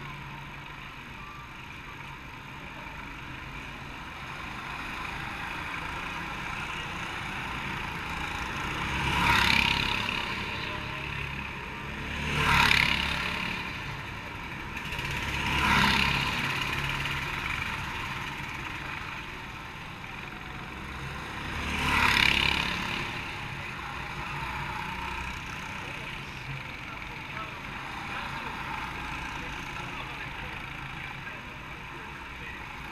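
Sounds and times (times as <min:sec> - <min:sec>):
racing karts passing by: 0:02.4 - 0:32.9.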